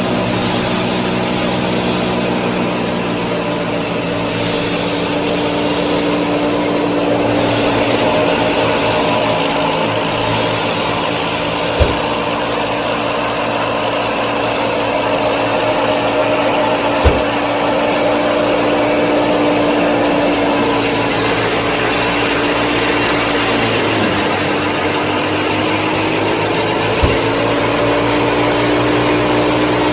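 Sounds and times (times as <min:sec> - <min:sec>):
model machinery whirring: 0:07.2 - 0:29.9
sharp knocks: 0:11.8 - 0:13.2, 0:13.9 - 0:17.4, 0:26.8 - 0:27.8.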